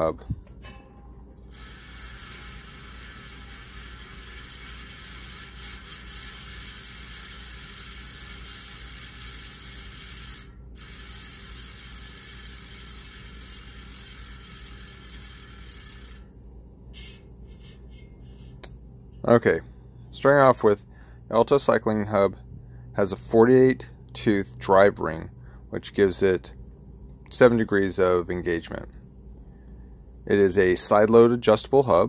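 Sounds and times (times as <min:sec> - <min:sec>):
bicycle hub ratcheting buzz: 0:01.4 - 0:16.4.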